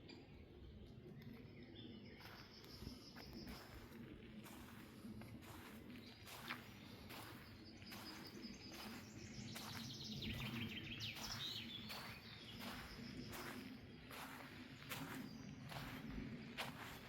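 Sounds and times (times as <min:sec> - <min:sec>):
footsteps crunching on forest floor: 0:02.2 - 0:17.0.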